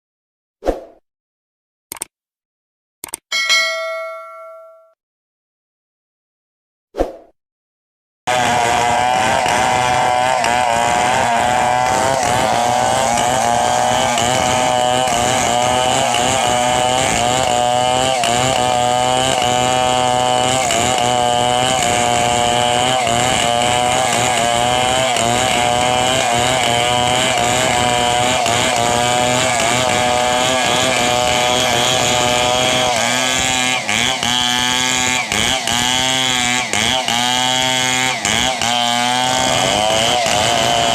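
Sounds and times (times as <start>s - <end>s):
chainsaw running at high speed: 8.3s - 40.9s.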